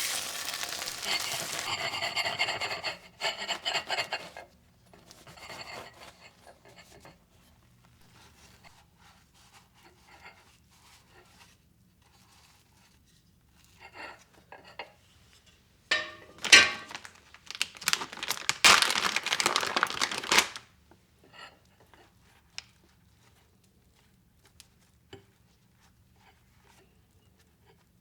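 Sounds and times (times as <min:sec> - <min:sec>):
rustling and crinkling: 0:00.0 - 0:01.8, 0:15.9 - 0:20.7.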